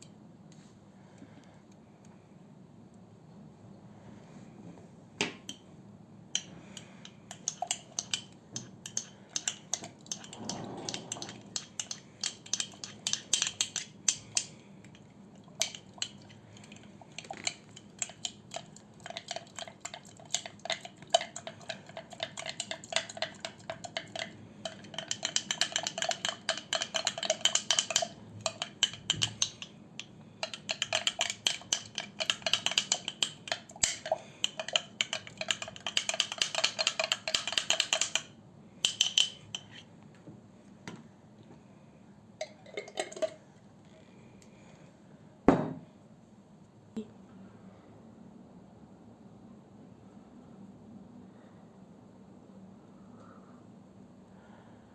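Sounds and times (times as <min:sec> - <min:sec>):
spoon clinking in a bowl: 0:07.3 - 0:14.5, 0:17.1 - 0:29.7, 0:30.4 - 0:39.8.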